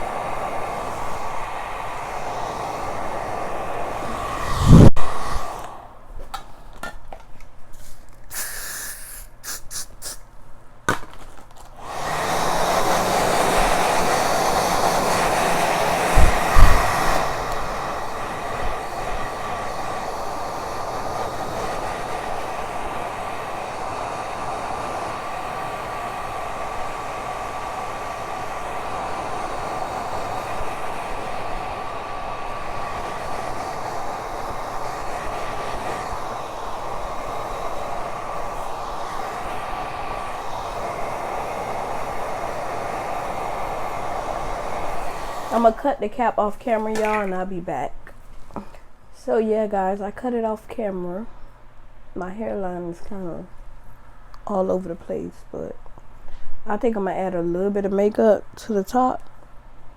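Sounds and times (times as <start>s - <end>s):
hair dryer blowing: 0.0s - 10.2s, 11.6s - 47.5s.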